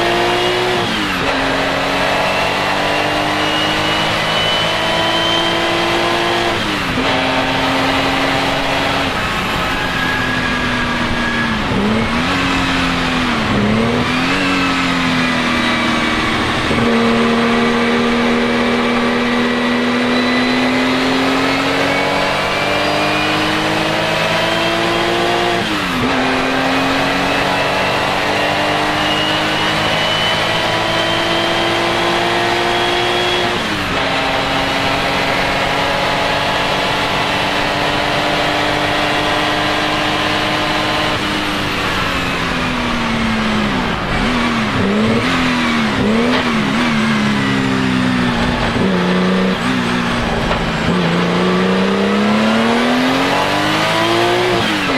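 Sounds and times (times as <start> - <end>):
racing car engine revving: 0.0 - 54.9.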